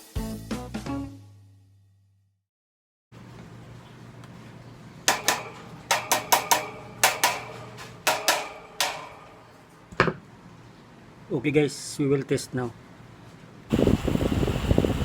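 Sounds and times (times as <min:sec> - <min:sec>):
metallic knocks and clinks: 0:05.1 - 0:10.2.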